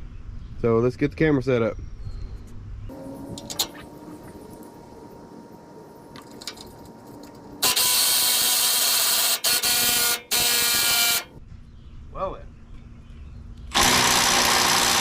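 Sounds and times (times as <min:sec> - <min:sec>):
power tool bursts: 0:07.6 - 0:11.4, 0:13.7 - 0:15.0.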